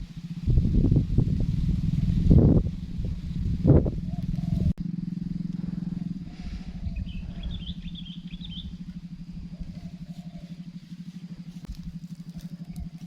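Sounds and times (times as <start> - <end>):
small engine running: 0.0 - 13.0
high bird chirps: 6.3 - 11.6.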